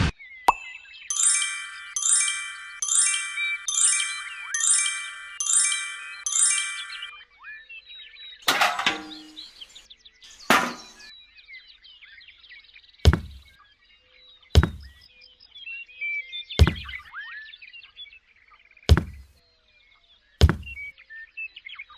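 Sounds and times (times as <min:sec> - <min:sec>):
birds chirping: 0:00.5 - 0:07.1, 0:08.4 - 0:11.1, 0:16.6 - 0:17.1, 0:20.4 - 0:20.9
chiming jingle: 0:00.6 - 0:07.1
sharp knocks and thuds: 0:13.1 - 0:13.5, 0:14.6 - 0:15.0, 0:16.6 - 0:17.0, 0:18.9 - 0:19.3, 0:20.4 - 0:20.9.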